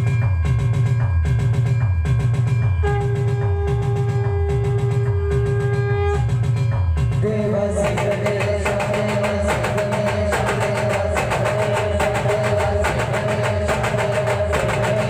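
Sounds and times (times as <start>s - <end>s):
fast heavy drumbeat: 0.0s - 15.0s.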